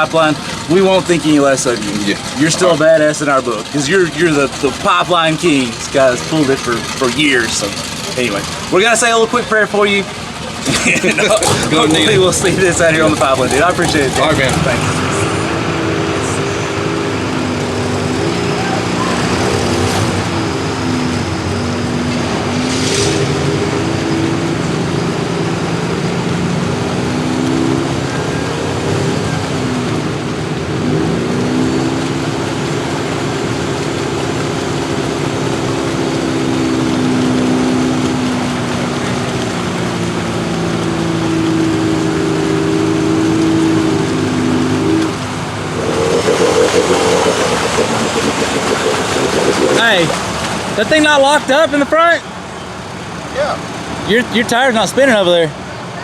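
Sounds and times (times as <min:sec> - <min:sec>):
car engine running hard: 0:00.0 - 0:56.0
loud rushing noise: 0:45.4 - 0:51.0.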